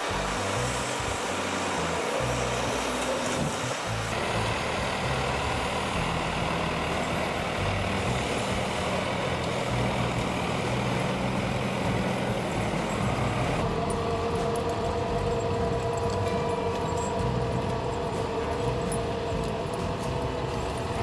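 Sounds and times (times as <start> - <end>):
broad rushing noise: 0.0 - 21.0
heavy machine engine droning: 0.0 - 21.0.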